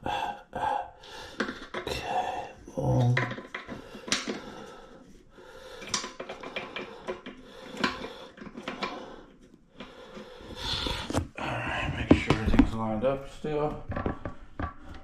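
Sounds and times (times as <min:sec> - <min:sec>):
plastic and metal clicks and scrapes: 0:01.3 - 0:02.0, 0:03.0 - 0:05.2, 0:05.8 - 0:12.8.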